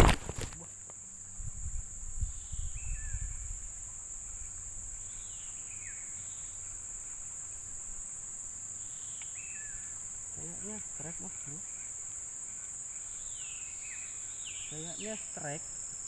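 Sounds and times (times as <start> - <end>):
insects shrilling: 0.0 - 16.0.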